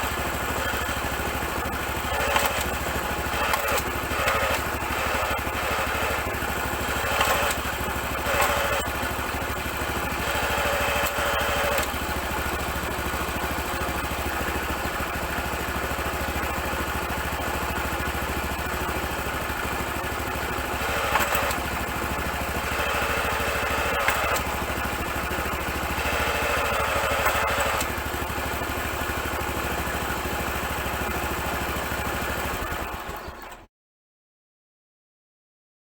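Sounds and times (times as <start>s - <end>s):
gear change click and clatter: 0.0s - 14.4s, 19.6s - 29.8s
motorcycle engine running: 0.0s - 33.7s.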